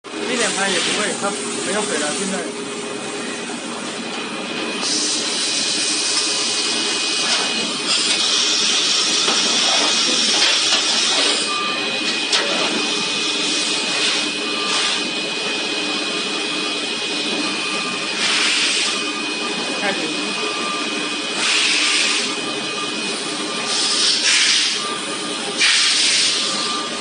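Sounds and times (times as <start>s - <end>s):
machine high whine: 0.0s - 27.0s
hiss: 23.7s - 24.8s, 25.6s - 26.4s.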